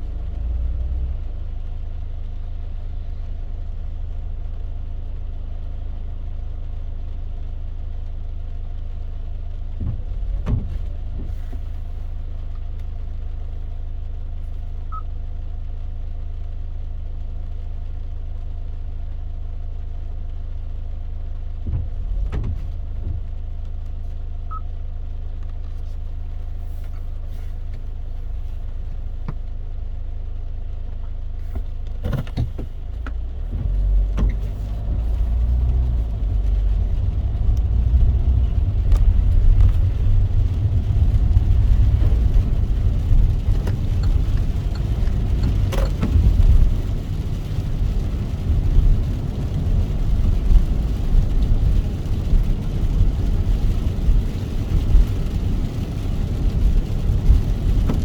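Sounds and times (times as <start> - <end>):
car engine rumble: 0.0 - 58.0
raindrops tapping: 31.7 - 58.0.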